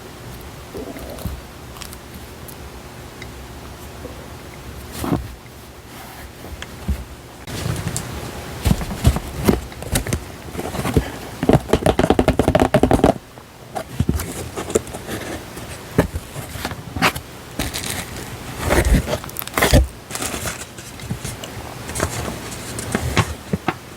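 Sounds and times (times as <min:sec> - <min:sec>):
paper rustling and tapping: 0:06.6 - 0:13.2, 0:13.8 - 0:23.9
paper crackling: 0:07.4 - 0:13.2, 0:13.8 - 0:23.9.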